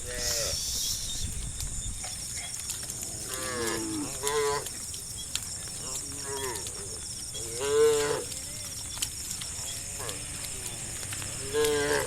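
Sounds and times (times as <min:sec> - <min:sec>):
cows mooing: 0:03.0 - 0:04.7, 0:05.8 - 0:08.4, 0:09.5 - 0:12.0.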